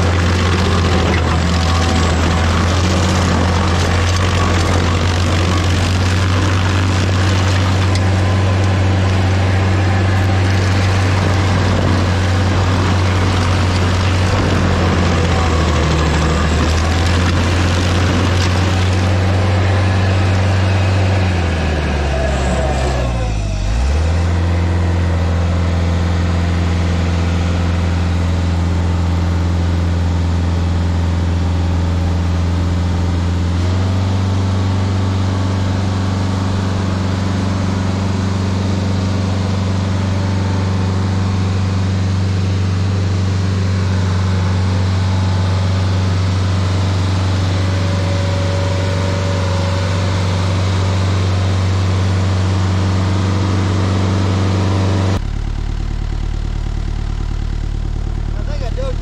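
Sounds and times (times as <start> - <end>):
stump grinder engine running: 0.0 - 59.0.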